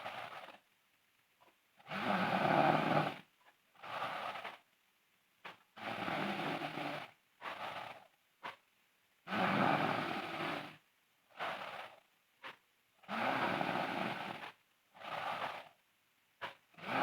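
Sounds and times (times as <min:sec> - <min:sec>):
girl snoring loudly: 0:01.9 - 0:03.2, 0:05.8 - 0:07.2, 0:09.3 - 0:10.8, 0:13.0 - 0:15.7, 0:16.8 - 0:17.0.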